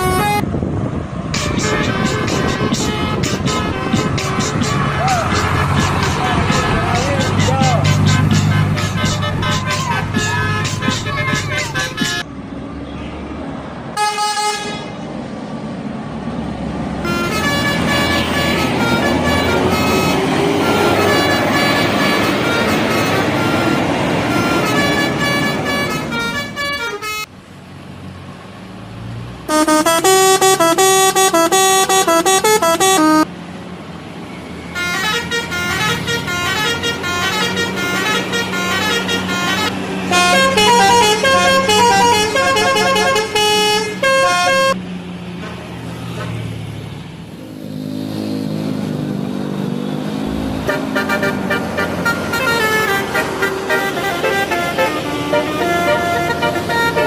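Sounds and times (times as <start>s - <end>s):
multi-tone bus horns playing melodies: 0.0s - 0.5s, 1.3s - 12.3s, 14.0s - 15.0s, 17.0s - 27.3s, 29.5s - 33.3s, 34.7s - 44.8s, 50.0s - 57.0s.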